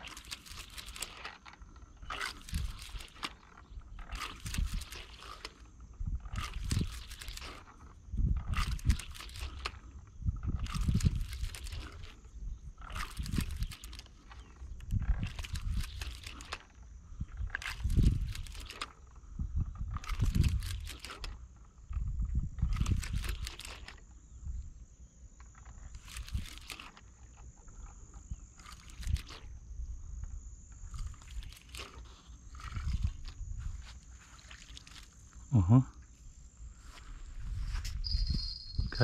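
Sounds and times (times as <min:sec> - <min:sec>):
insects trilling: 0:00.0 - 0:39.0
wind buffeting microphone: 0:03.8 - 0:05.0, 0:05.8 - 0:24.9, 0:32.4 - 0:33.9, 0:36.7 - 0:39.0.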